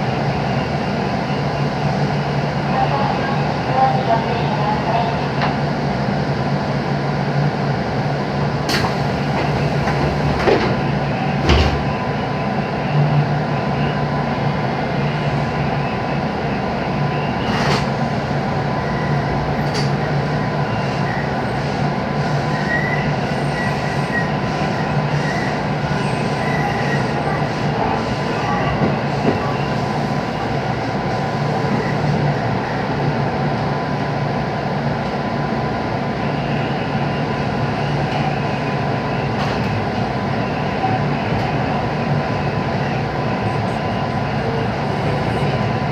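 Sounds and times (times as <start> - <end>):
train wheels rumbling: 5.3 - 13.5, 14.2 - 33.8.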